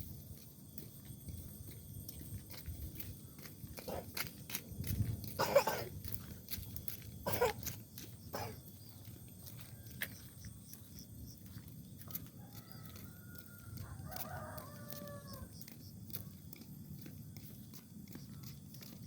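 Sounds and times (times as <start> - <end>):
faint rooster crowing: 9.0 - 16.4.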